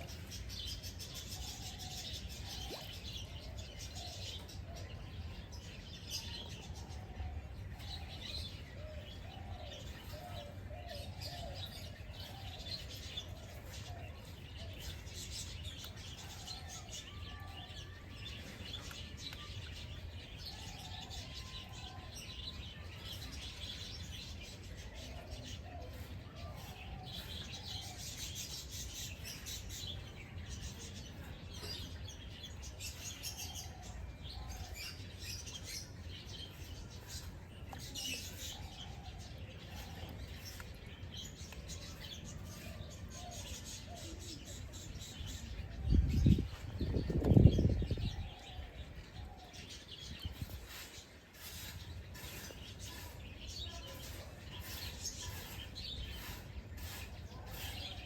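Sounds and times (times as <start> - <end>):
birds chirping: 0.0 - 58.0.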